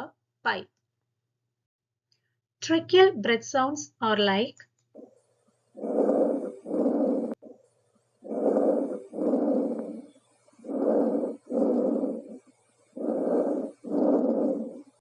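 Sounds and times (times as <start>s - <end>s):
harsh breath sounds through stethoscope: 5.8s - 7.4s, 8.2s - 15.0s.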